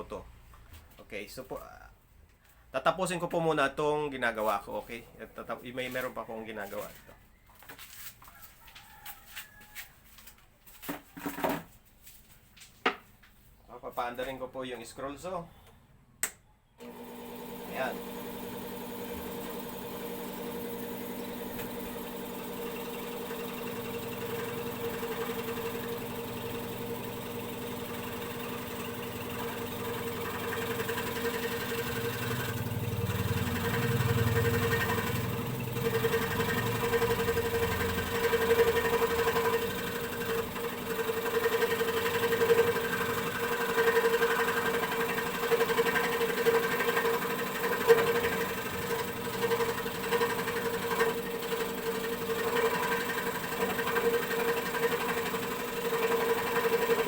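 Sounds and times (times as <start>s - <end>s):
scroll saw cutting wood: 16.8s - 57.0s.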